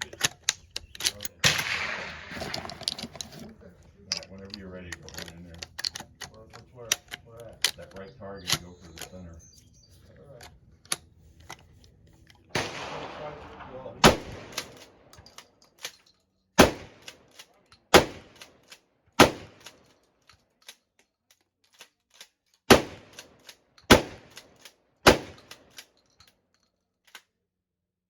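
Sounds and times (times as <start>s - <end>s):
shotgun shots: 1.4s - 3.0s, 12.5s - 15.2s, 16.6s - 17.3s, 17.9s - 18.5s, 19.2s - 19.8s, 22.7s - 23.3s, 23.9s - 25.7s.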